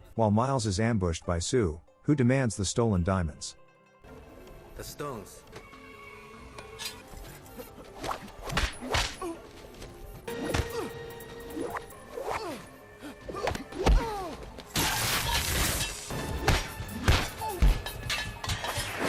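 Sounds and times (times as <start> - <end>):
background music: 0.0 - 19.0
punches landing thwacks: 8.0 - 9.4, 13.3 - 17.8.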